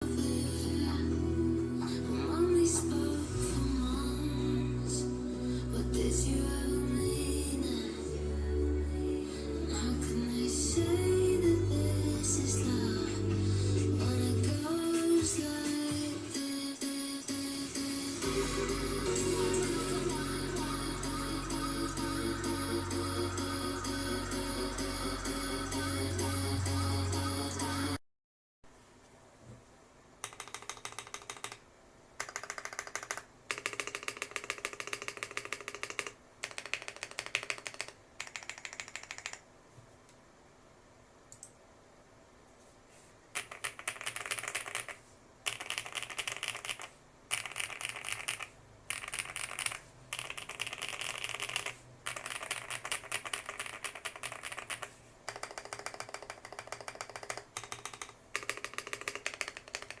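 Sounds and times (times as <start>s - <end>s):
mechanical keyboard key clacks: 43.4s - 60.0s.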